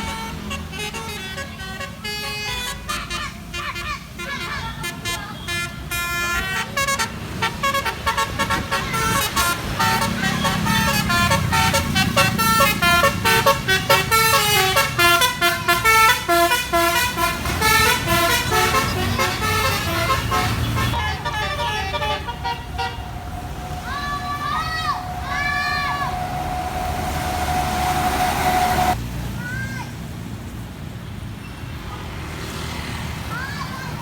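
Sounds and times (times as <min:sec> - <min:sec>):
bus musical horn melody: 0:00.0 - 0:29.0
bus engine rumble: 0:00.0 - 0:31.1.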